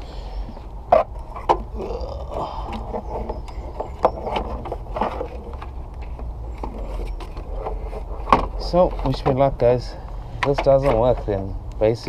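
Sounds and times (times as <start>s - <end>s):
rustling of wiring: 0.0s - 12.0s
sharp clicks and knocks: 2.7s - 12.0s.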